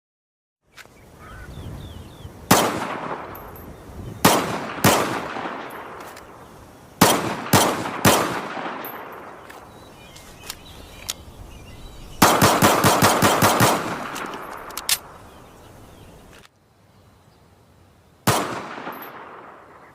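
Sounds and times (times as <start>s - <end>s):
pistol gunshots echoing: 2.5s - 3.6s, 4.2s - 6.4s, 7.0s - 9.4s, 12.2s - 15.1s, 18.3s - 19.9s.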